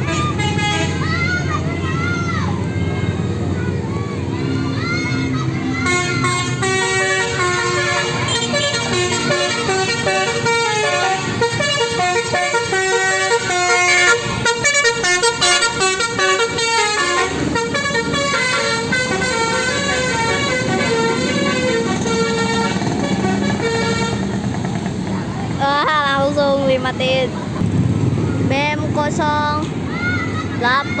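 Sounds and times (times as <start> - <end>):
bus musical horn: 0.0 - 1.2, 5.8 - 24.5
bus running: 0.0 - 31.0.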